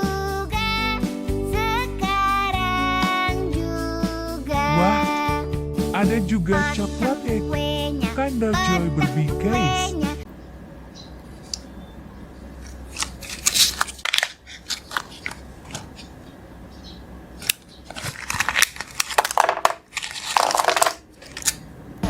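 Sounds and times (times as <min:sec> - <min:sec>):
plastic wrapper crinkling: 0:12.9 - 0:16.2, 0:17.4 - 0:21.6.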